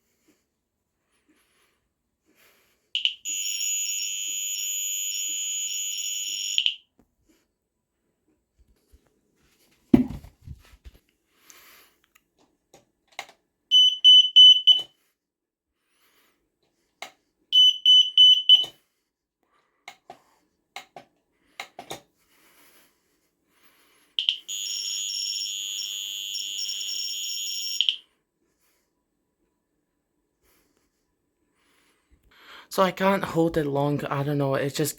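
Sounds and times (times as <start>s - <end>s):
continuous high-pitched alarm tone: 3.0s - 6.9s, 13.7s - 14.9s, 17.6s - 18.7s, 24.2s - 28.1s
smoke alarm beeping: 3.0s - 6.9s, 13.7s - 15.0s, 17.5s - 18.8s, 24.2s - 28.1s.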